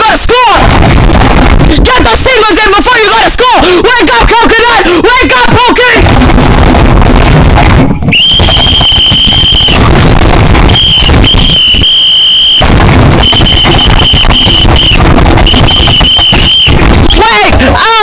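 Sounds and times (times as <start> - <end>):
harsh crackling noise: 0.0 - 18.0
shrill alarm tone: 8.1 - 10.0, 10.6 - 18.0.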